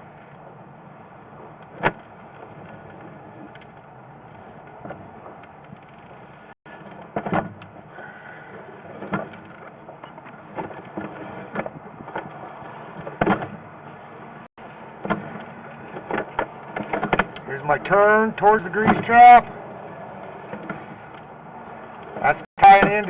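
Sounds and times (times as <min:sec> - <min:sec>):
sharp knocks and clunks: 0:06.8 - 0:07.8, 0:08.9 - 0:13.6, 0:15.0 - 0:17.5, 0:18.4 - 0:19.5, 0:21.9 - 0:23.0.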